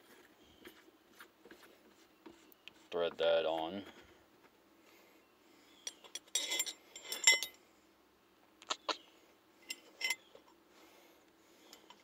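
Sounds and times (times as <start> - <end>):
metal tool clinking: 5.8 - 7.6, 9.6 - 10.3.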